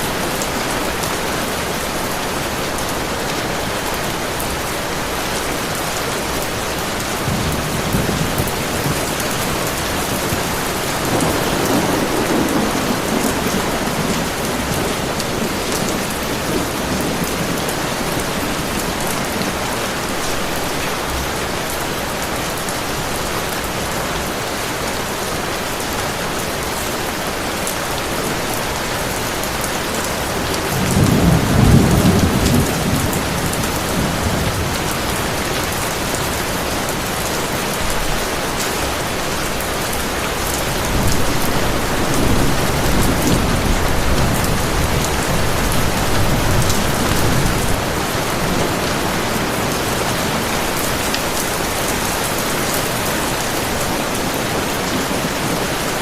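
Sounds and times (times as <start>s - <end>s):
heavy rain falling: 0.0s - 56.0s
thunder rumbling: 6.9s - 20.6s, 30.0s - 38.3s, 40.0s - 56.0s.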